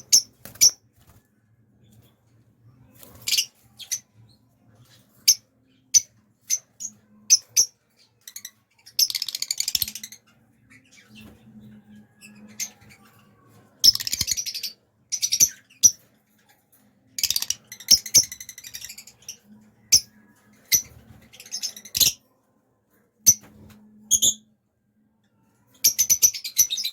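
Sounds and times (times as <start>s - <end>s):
parrots chirping: 0.0s - 0.8s, 4.9s - 11.3s, 13.8s - 16.0s, 17.2s - 20.1s.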